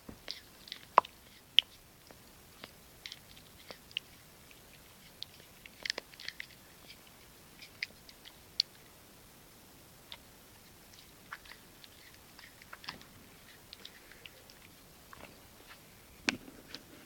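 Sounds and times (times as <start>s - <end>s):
dog chewing and crunching: 0.2s - 8.7s, 10.9s - 15.4s.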